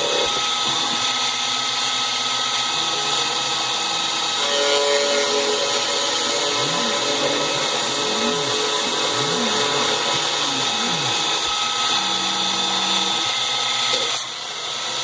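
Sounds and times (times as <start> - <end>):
milling machine running: 0.0 - 15.0
axis motors gliding in pitch: 2.4 - 14.3.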